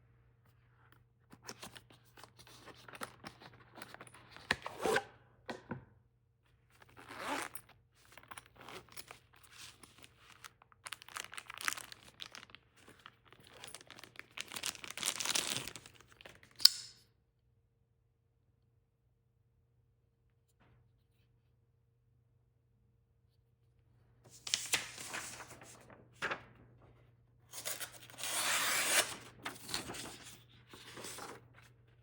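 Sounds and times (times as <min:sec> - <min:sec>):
packaging tearing and crinkling: 0:09.8 - 0:16.6.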